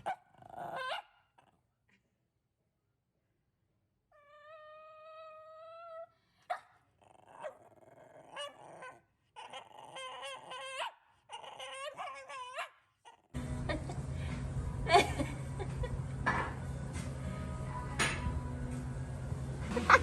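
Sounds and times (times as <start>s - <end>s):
dog whining and yipping: 0.0s - 1.2s, 4.2s - 13.3s.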